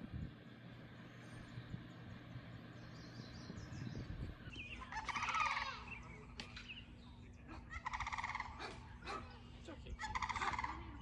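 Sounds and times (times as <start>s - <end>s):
faint background chirping: 0.1s - 11.0s
bird rattling call: 4.8s - 5.9s, 7.8s - 8.9s, 10.0s - 10.9s.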